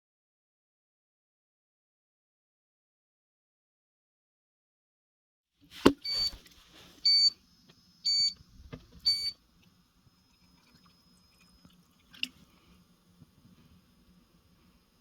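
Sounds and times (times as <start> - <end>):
short high electronic beeps: 6.0 - 6.4, 7.1 - 7.4, 9.1 - 9.4.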